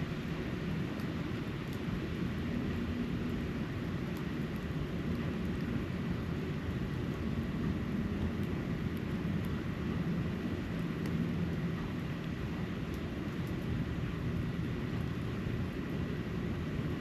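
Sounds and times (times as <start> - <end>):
faint light ticks: 0.9 - 2.0, 4.0 - 5.8, 8.1 - 9.6, 10.7 - 11.2, 12.2 - 13.7.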